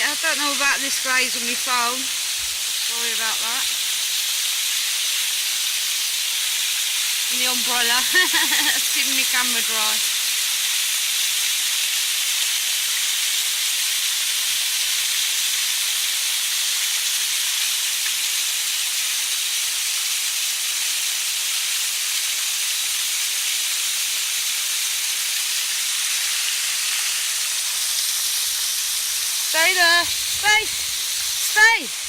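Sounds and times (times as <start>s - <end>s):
heavy rain: 0.0s - 3.8s, 6.6s - 11.4s, 21.6s - 32.0s
waterfall: 0.0s - 32.0s.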